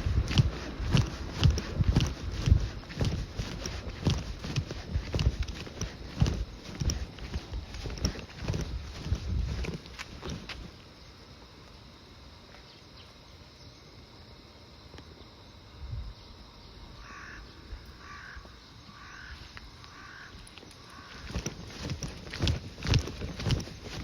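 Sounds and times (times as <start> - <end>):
bird calling: 17.0 - 24.0.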